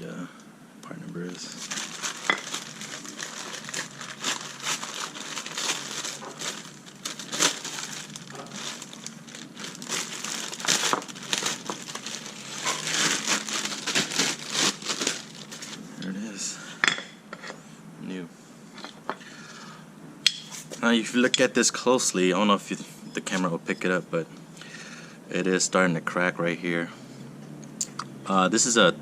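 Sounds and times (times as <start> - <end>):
packaging crinkling: 1.2 - 15.8.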